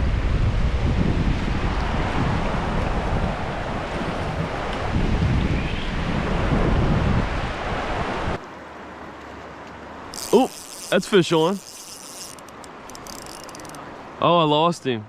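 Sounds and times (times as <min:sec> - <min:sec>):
wind buffeting microphone: 0:00.0 - 0:08.4
river water rushing: 0:01.6 - 0:05.0, 0:06.1 - 0:14.7.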